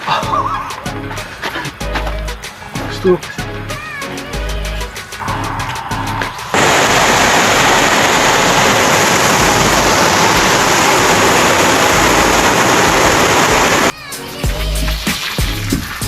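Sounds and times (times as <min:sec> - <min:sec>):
water spraying hard: 0:05.0 - 0:16.0.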